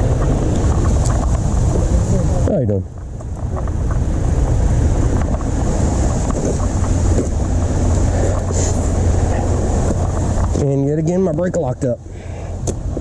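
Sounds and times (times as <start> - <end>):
road rumble: 0.0 - 13.0
wind rushing over microphone: 0.0 - 13.0.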